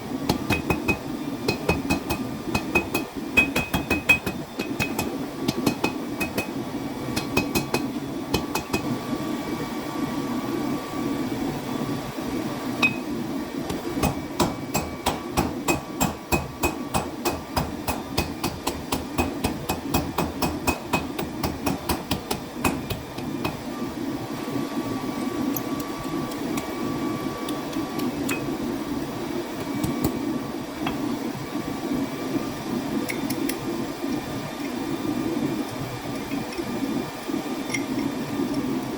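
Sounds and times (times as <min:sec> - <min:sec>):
hammer striking hot steel: 0:00.3 - 0:09.0, 0:12.8 - 0:13.1, 0:13.7 - 0:23.6.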